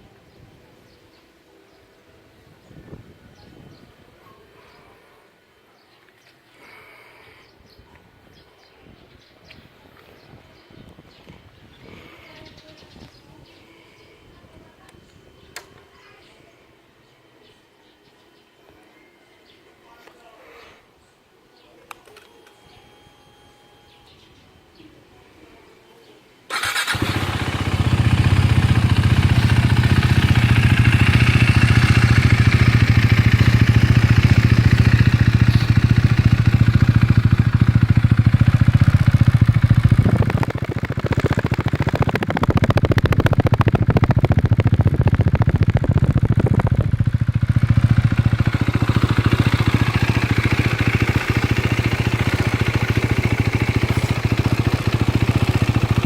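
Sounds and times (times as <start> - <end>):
motorcycle engine running: 26.5 - 56.0.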